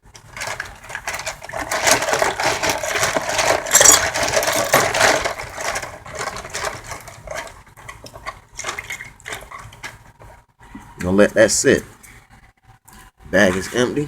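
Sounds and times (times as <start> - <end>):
steel bolts rattling: 0.4 - 10.0.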